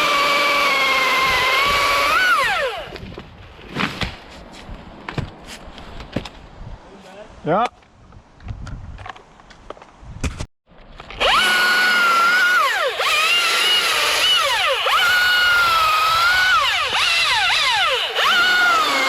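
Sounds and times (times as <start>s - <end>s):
chainsaw revving: 0.0s - 3.0s, 11.1s - 19.0s.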